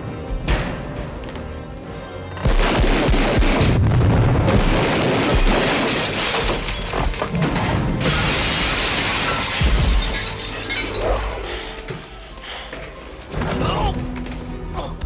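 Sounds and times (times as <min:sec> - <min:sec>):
orchestral score: 0:00.0 - 0:05.4
explosion blast and rumble: 0:02.4 - 0:10.3.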